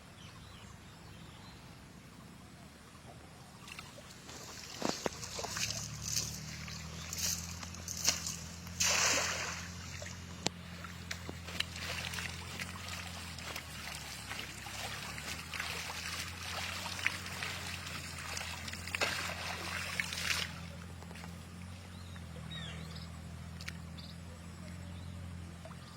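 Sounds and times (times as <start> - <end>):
steady low hum: 0.0 - 25.9
water trickling: 3.6 - 22.2
water sloshing and splashing: 3.6 - 22.3.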